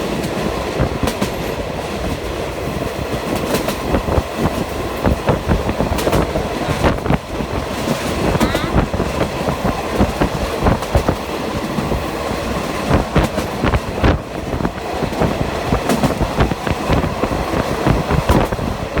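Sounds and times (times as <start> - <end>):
train rumble: 0.0 - 19.0.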